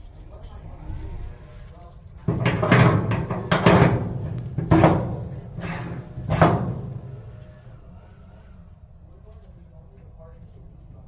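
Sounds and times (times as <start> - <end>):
short low rumble: 0.0 - 2.4
heavy knocks: 2.2 - 7.7.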